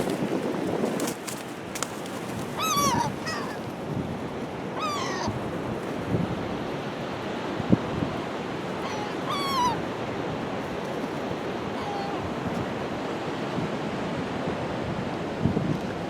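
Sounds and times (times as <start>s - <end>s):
surf washing onto beach: 0.0s - 4.8s
high falling animal call: 2.5s - 3.7s, 8.8s - 9.8s.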